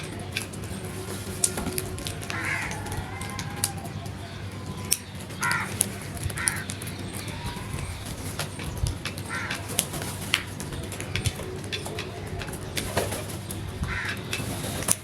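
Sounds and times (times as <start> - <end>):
crows cawing: 1.3 - 12.6, 13.8 - 14.4.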